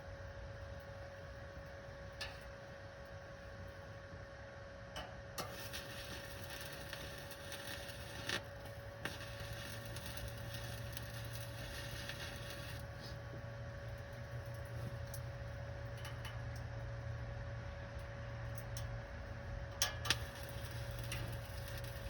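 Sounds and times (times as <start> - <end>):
steady hum: 0.0 - 22.0
welding arc crackling: 5.4 - 16.3, 19.8 - 22.0.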